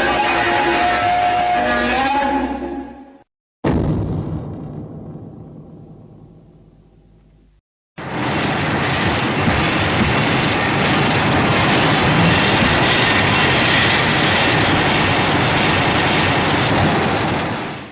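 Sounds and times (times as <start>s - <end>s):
loud rushing noise: 8.0s - 17.9s.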